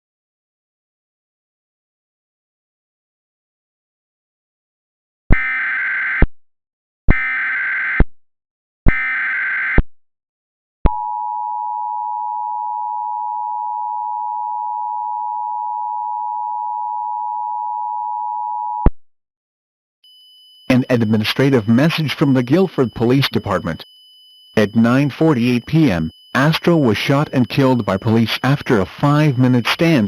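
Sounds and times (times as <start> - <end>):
data tone bursts: 20.1 - 30.0
two-tone attention signal: 20.1 - 30.0.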